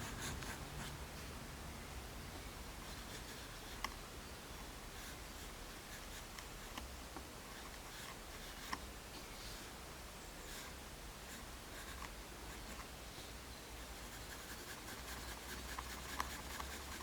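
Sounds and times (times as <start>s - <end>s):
pencil sketching on paper: 0.0s - 1.0s, 13.8s - 17.0s
sharp pencil ticks: 13.9s - 17.0s.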